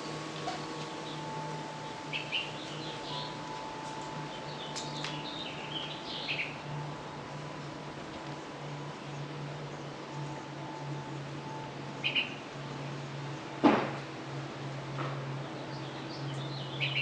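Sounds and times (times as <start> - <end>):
small birds chirping: 0.0 - 6.7, 8.3 - 13.5, 15.4 - 17.0.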